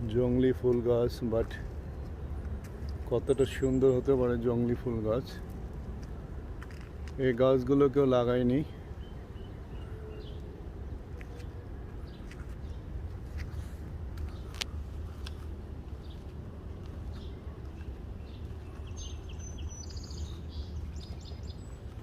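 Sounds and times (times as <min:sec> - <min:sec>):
steady low background rumble: 0:00.0 - 0:22.0
birds chirping and calling: 0:08.2 - 0:16.4, 0:17.0 - 0:22.0.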